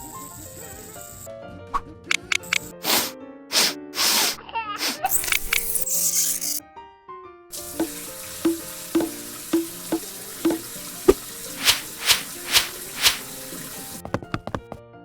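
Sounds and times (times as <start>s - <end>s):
quick clicks: 2.1s - 3.1s, 5.1s - 6.6s
background music: 7.5s - 14.5s.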